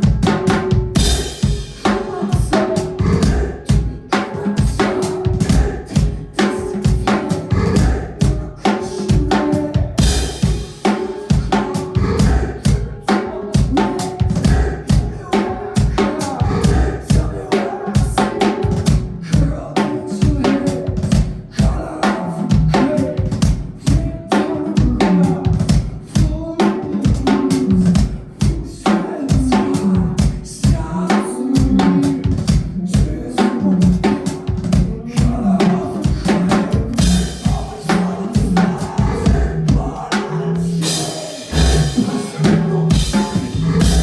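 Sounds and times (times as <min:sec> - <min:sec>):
drum kit hit fast: 0:00.0 - 0:44.0
live band music: 0:00.0 - 0:44.0
sustained bass notes: 0:41.5 - 0:44.0.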